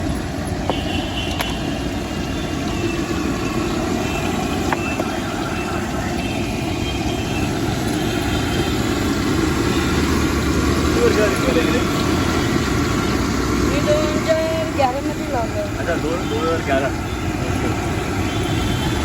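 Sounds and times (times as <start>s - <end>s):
city street traffic: 0.0s - 19.0s.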